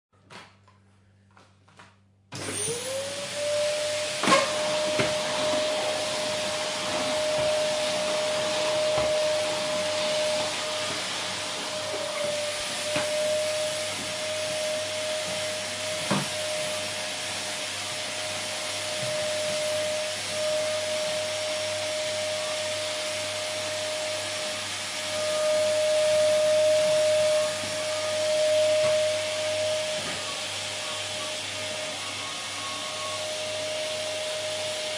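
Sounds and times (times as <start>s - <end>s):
vacuum cleaner running: 2.3s - 34.9s.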